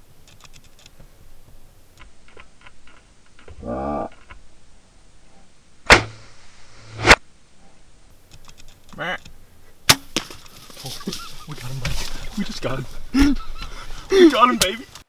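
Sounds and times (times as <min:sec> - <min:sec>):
bow shot cracks: 0:05.8 - 0:07.3, 0:09.8 - 0:11.2.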